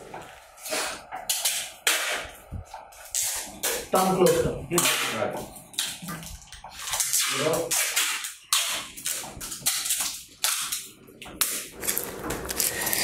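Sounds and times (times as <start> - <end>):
adhesive tape pulled off roll: 11.5 - 13.0.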